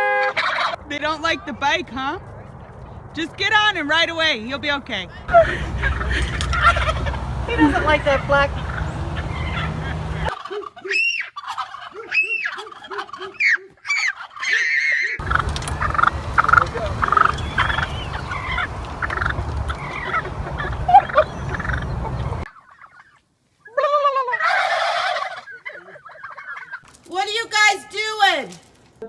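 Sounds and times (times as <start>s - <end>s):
turkeys gobbling: 0.3s - 0.8s, 5.2s - 26.9s
steady low rumble: 0.8s - 10.3s, 15.2s - 22.5s.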